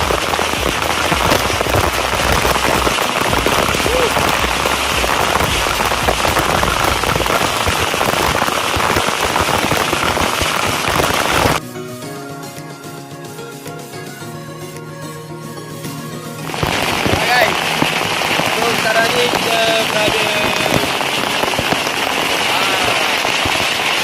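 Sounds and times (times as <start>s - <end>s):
waterfall rushing: 0.0s - 11.6s, 16.4s - 24.0s.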